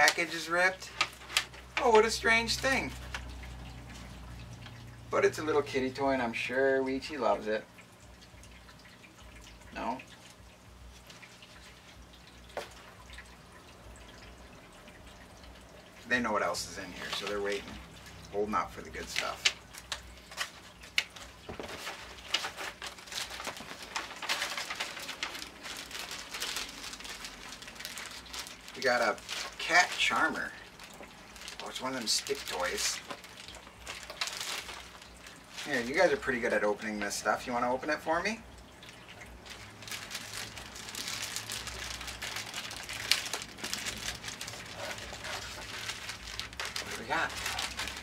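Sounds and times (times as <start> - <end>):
packaging rustling and crinkling: 0.0 - 4.2, 18.7 - 37.2, 39.4 - 48.0.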